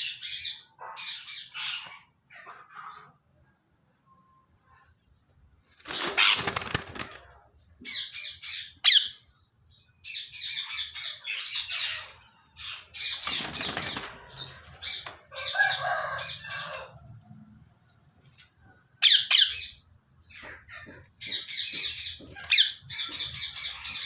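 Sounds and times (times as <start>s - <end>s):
wing flapping: 5.7s - 7.4s, 13.1s - 15.2s
parrot squawking: 6.0s - 6.7s, 7.9s - 9.2s.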